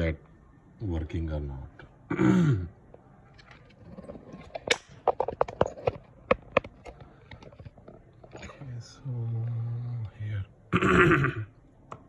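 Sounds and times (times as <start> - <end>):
phone parts and tools clicking: 3.3 - 8.6.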